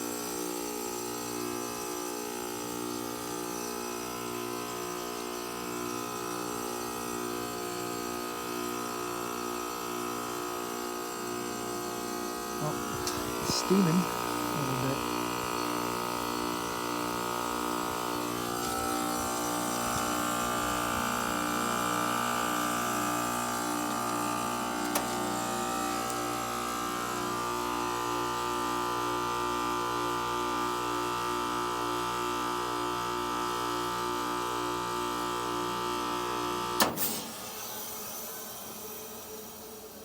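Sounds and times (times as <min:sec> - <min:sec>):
heat pump compressor hum: 0:00.0 - 0:40.0
high machine whine: 0:10.8 - 0:27.7.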